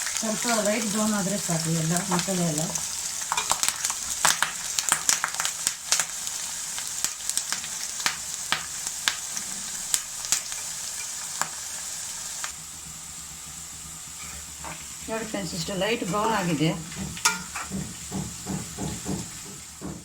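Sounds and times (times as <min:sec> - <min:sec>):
food sizzling in hot oil: 0:00.0 - 0:20.0
sharp pops in oil: 0:16.9 - 0:20.0.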